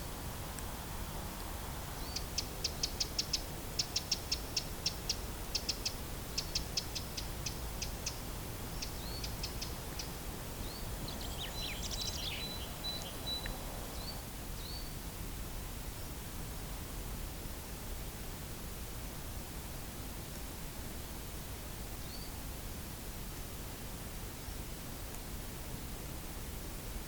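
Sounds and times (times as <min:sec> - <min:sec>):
outdoor hiss: 0:00.0 - 0:17.4
birds calling: 0:08.8 - 0:14.3.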